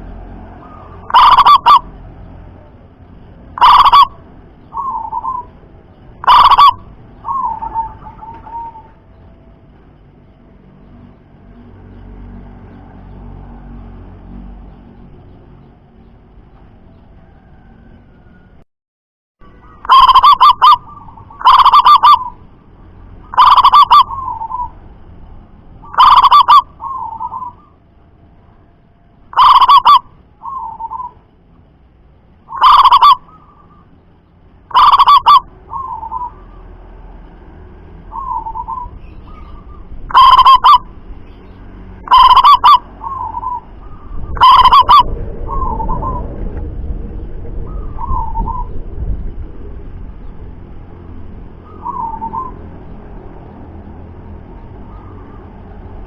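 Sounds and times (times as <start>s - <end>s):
doves cooing: 0.0s - 1.9s, 3.6s - 5.6s, 6.2s - 9.0s, 19.7s - 22.4s, 23.3s - 24.8s, 25.8s - 27.8s, 29.3s - 31.2s, 32.5s - 33.9s, 34.7s - 36.7s, 38.1s - 40.9s, 42.0s - 50.3s
low background rumble: 19.4s - 56.0s.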